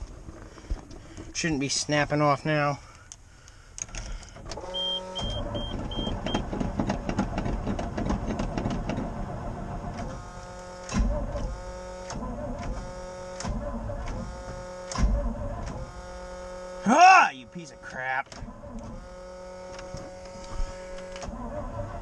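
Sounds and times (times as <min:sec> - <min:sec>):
truck engine cranking: 0:00.0 - 0:01.8, 0:02.9 - 0:16.9, 0:17.6 - 0:22.0
short high beeps: 0:04.7 - 0:06.4.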